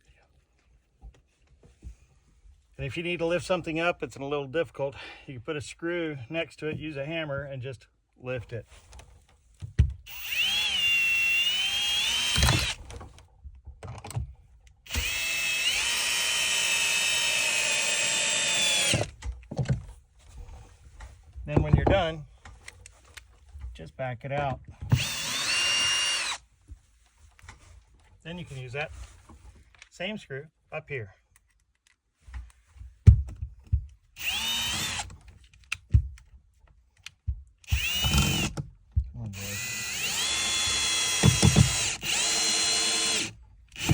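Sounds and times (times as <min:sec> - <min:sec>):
power drill driving screw into wood: 0:10.1 - 0:13.0, 0:14.9 - 0:19.2, 0:24.9 - 0:26.4, 0:34.2 - 0:35.2, 0:37.6 - 0:38.7, 0:39.4 - 0:43.9.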